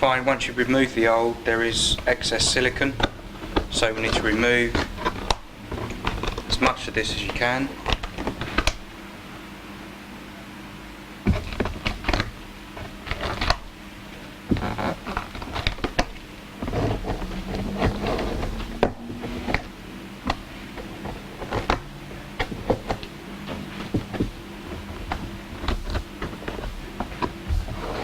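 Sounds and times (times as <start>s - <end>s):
faint steady hum: 0.0s - 28.0s
scraping sealant: 11.3s - 28.0s.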